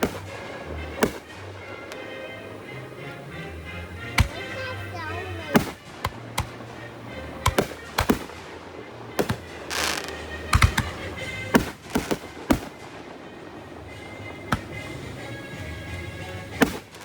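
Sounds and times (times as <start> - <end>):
firework hiss: 0.0 - 17.0
fireworks bangs: 0.0 - 17.0
music playing: 0.0 - 17.0.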